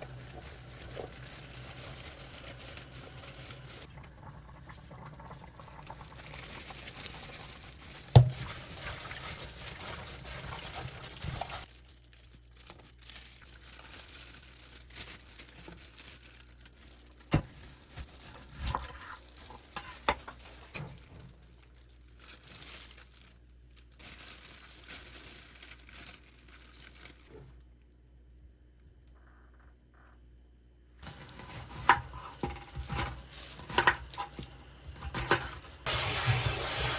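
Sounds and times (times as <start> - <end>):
rustling and crinkling: 0.0 - 27.7.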